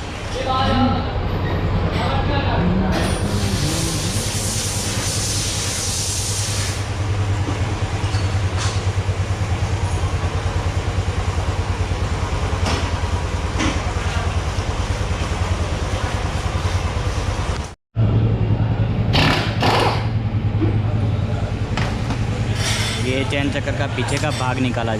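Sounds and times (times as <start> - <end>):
hiss: 3.3 - 6.9.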